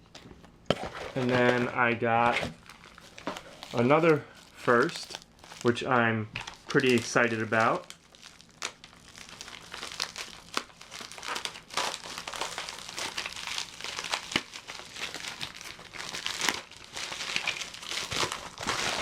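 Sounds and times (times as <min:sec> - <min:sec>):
plastic packaging crinkling: 0:00.0 - 0:19.0.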